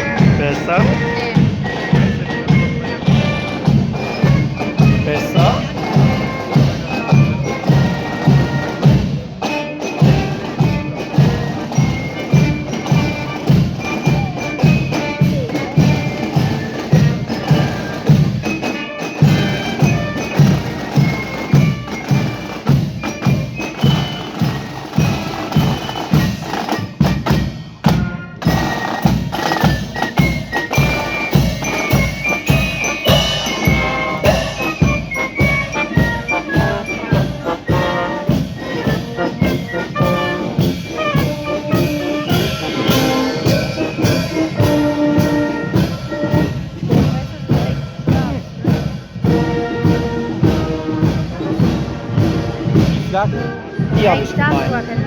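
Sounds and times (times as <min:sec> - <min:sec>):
bell-like mallet percussion: 0:00.0 - 0:49.4
marching band playing: 0:00.0 - 0:55.0.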